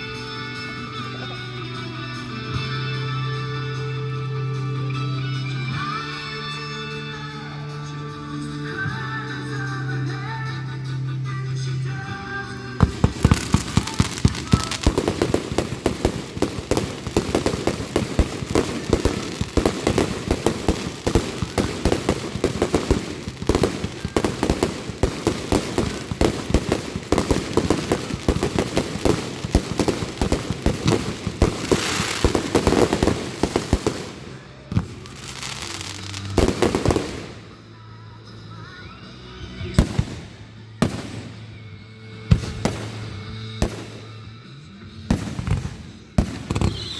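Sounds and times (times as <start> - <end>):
music playing: 0.0 - 46.9
fireworks bangs and crackles: 12.0 - 37.8, 39.6 - 46.9.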